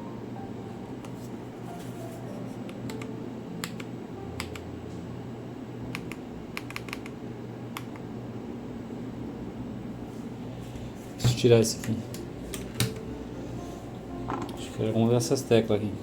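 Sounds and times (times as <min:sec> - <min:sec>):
mechanical keyboard key clicks: 0:06.0 - 0:07.1.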